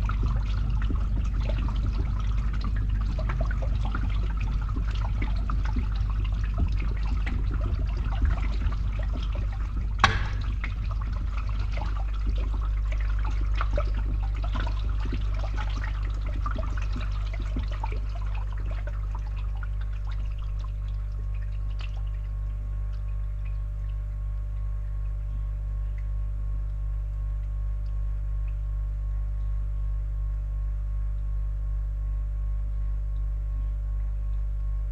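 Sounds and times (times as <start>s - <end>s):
pump humming: 0.0s - 34.9s
water trickling through pipe: 0.0s - 34.9s
sharp knock: 10.0s - 10.5s.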